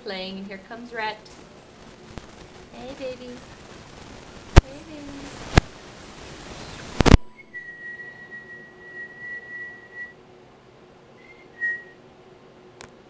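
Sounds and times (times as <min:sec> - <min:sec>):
rustling noise: 0:01.2 - 0:07.3
high pure whistling tone: 0:06.5 - 0:10.2, 0:11.2 - 0:12.0.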